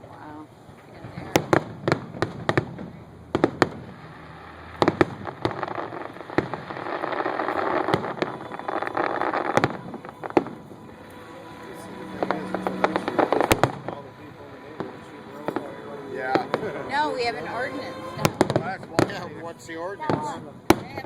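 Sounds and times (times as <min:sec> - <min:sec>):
fireworks bangs: 0:00.0 - 0:21.0
fireworks crackle: 0:00.0 - 0:21.0.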